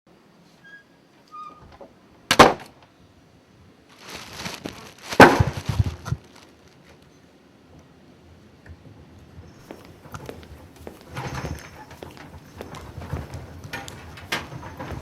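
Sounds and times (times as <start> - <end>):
loud sudden cracks: 2.3 - 2.9, 4.0 - 6.6
crackling: 3.8 - 7.9, 8.6 - 15.0.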